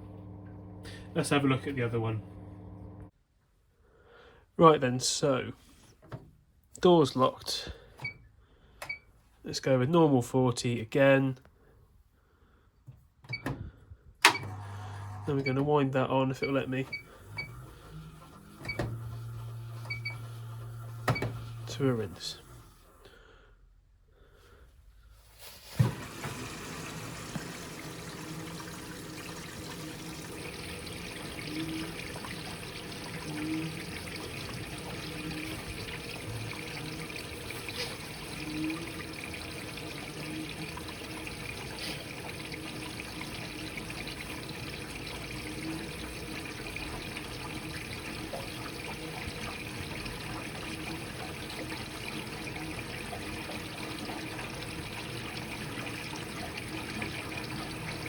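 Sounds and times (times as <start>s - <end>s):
washing machine filling with water: 0.0s - 3.1s, 14.3s - 23.0s, 25.5s - 58.0s.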